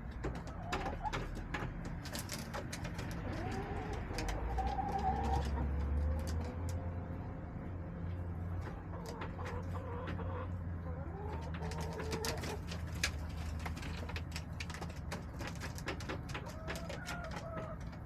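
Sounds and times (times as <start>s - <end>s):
hens calling: 2.8s - 6.5s, 8.6s - 12.8s, 16.4s - 18.0s.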